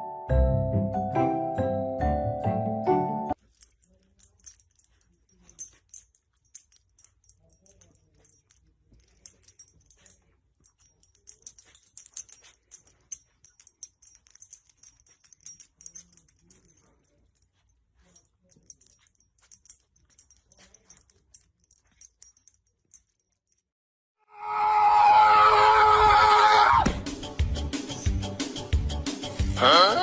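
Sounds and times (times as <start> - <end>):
dog clicking and scratching: 3.4 - 23.4.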